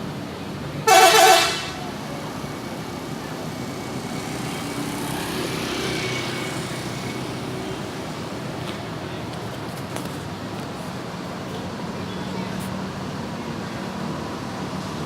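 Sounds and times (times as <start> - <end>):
bus passing by: 0.0 - 15.0.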